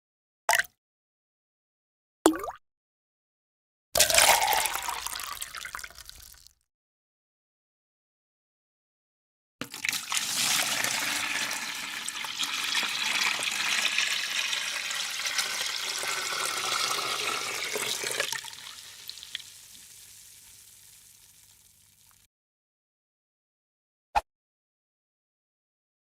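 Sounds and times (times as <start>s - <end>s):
water trickling: 9.8s - 22.3s.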